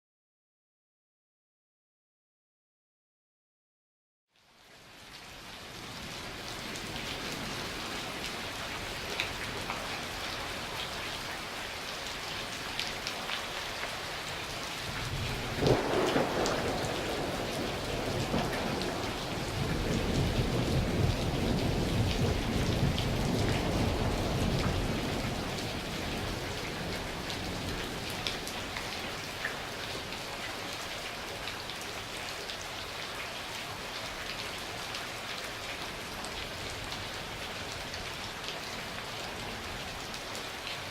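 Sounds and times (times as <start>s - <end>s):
heavy rain: 4.4s - 40.9s
raindrops pattering close by: 4.4s - 40.9s
thunderclap and rolling thunder: 14.8s - 28.4s.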